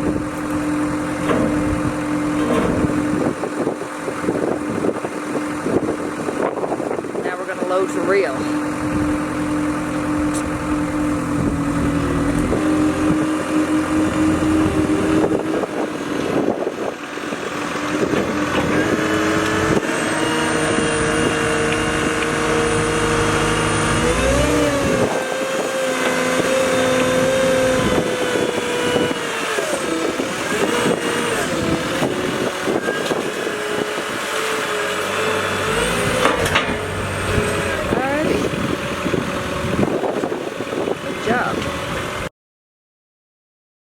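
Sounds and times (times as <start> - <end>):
diesel engine revving under load: 0.0 - 42.3
clanks and knocks: 0.3 - 3.8, 35.8 - 37.9.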